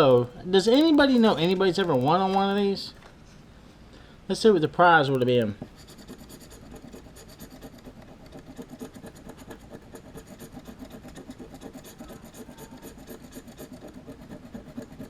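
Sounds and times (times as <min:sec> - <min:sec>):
scratch card being scratched: 0:05.6 - 0:15.0.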